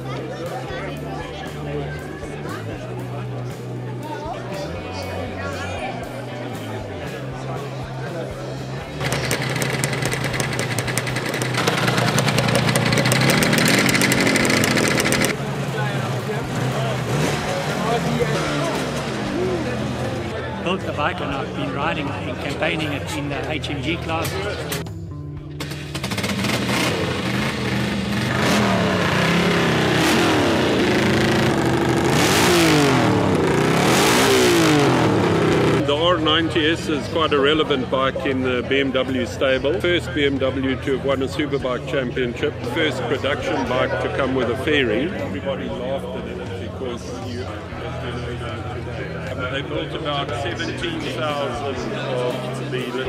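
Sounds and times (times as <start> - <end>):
motorcycle engine revving: 8.7 - 20.4, 24.3 - 36.3.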